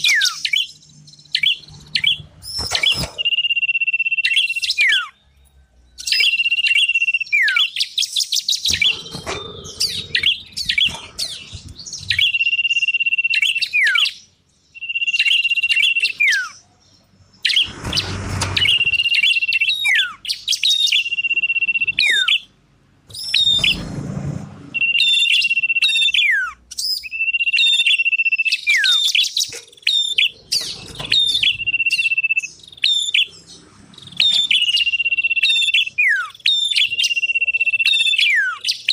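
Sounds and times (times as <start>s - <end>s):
songbirds whistling and trilling: 0.0s - 24.0s, 24.7s - 38.9s
short burst of rushing noise: 23.2s - 24.8s.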